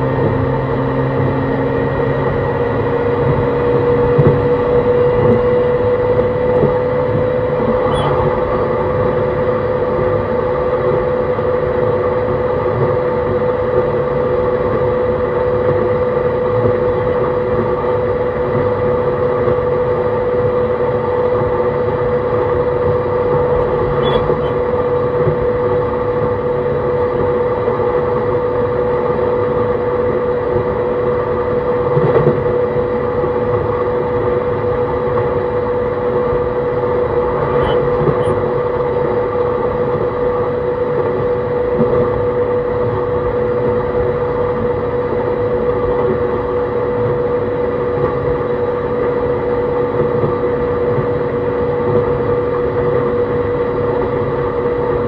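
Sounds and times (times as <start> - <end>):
constant mechanical hum: 0.0 - 55.0
train rolling noise: 32.0 - 44.2.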